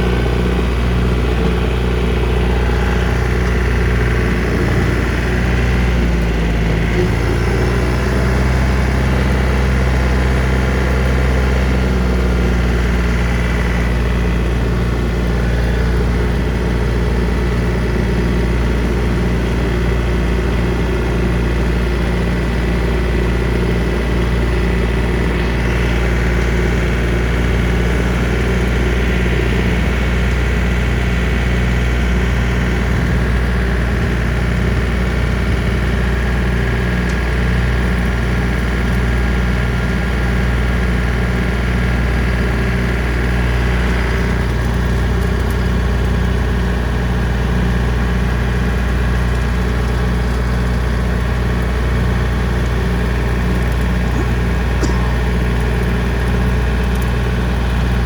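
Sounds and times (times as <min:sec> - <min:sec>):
tractor diesel engine running: 0:00.0 - 0:58.0.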